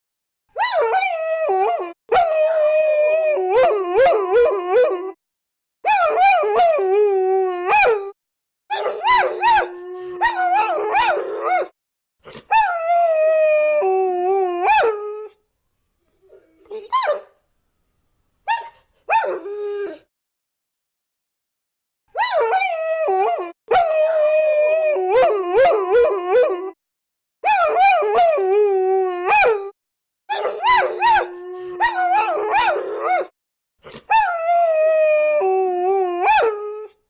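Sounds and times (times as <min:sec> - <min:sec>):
dogs howling: 0:30.3 - 0:33.3.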